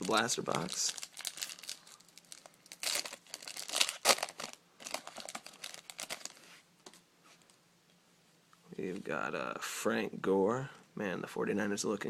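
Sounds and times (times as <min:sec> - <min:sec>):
foil wrapper tearing and crinkling: 0:00.0 - 0:06.4.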